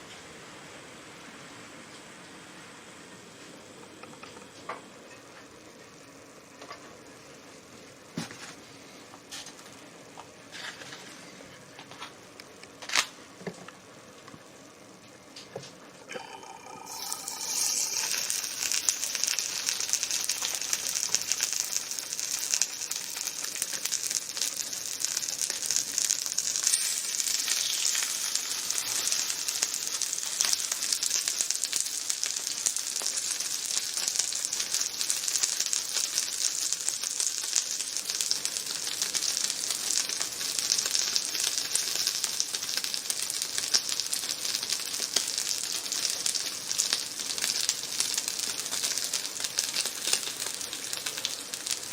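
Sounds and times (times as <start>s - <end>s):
food sizzling on grill plate: 16.1s - 51.9s.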